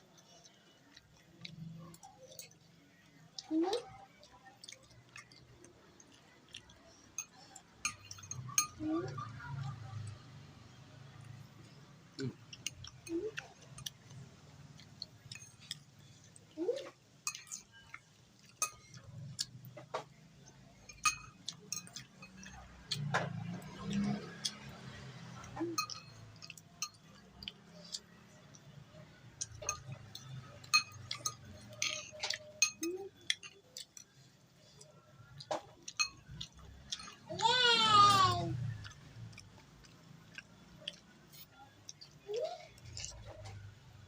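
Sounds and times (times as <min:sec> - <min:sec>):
soft eating sounds: 0:00.0 - 0:44.0
spoon clinking against a bowl: 0:06.1 - 0:10.1, 0:16.8 - 0:28.7, 0:29.4 - 0:34.1, 0:35.8 - 0:37.2.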